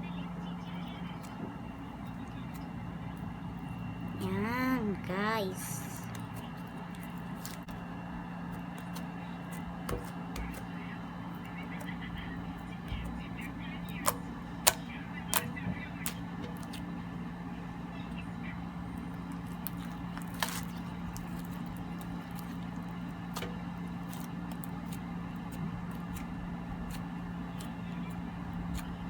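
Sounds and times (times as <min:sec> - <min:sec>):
steady low hum: 0:00.0 - 0:29.0
slime crackling: 0:19.0 - 0:26.3.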